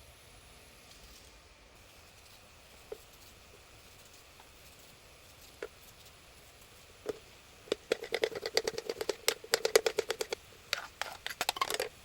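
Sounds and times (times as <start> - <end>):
kitchen utensil knocking rapidly: 7.7 - 10.4.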